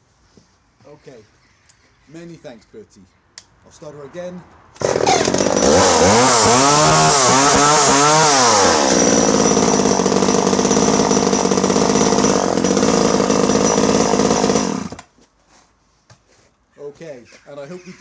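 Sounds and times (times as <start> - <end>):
two-stroke chainsaw revving: 4.8 - 15.1.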